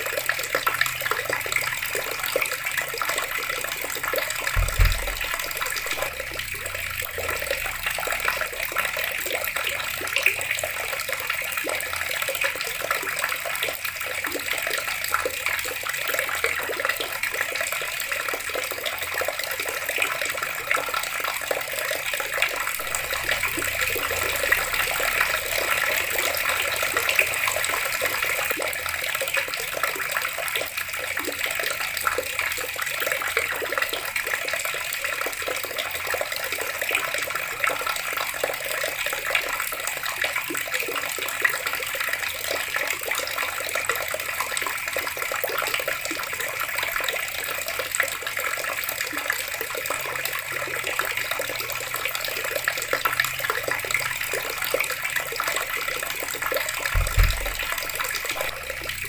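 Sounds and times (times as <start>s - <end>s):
water running from tap: 0.0s - 59.0s
low thump: 4.5s - 7.5s, 56.9s - 59.0s.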